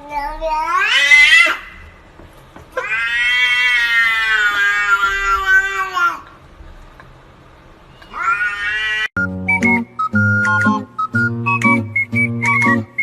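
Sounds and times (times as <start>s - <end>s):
cat meowing: 0.2s - 1.7s, 2.8s - 6.2s, 8.0s - 9.1s.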